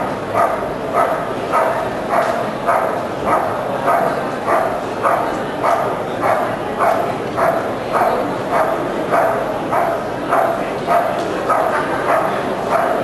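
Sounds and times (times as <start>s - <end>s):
dog barking rhythmically: 0.3s - 13.0s.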